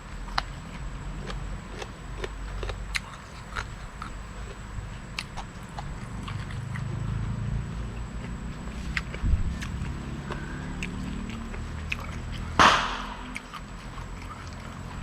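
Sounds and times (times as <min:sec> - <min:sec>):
mouth clicks and crunches: 0:00.0 - 0:07.0, 0:08.0 - 0:12.6
person chewing: 0:00.3 - 0:07.0, 0:08.0 - 0:12.5.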